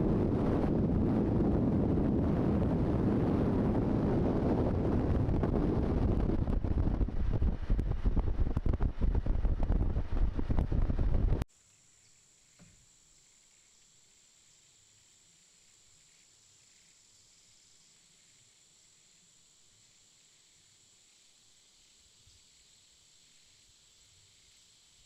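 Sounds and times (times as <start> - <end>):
wind buffeting microphone: 0.0 - 11.4.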